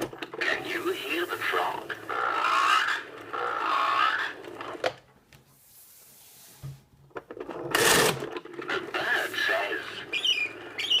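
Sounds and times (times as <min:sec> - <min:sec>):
toy frog croaks: 0:01.4 - 0:04.8.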